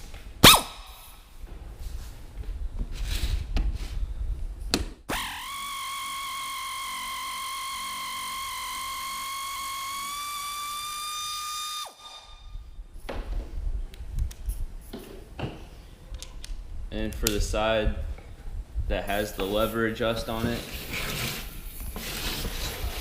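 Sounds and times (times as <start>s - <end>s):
air ratchet whining: 5.1s - 12.5s.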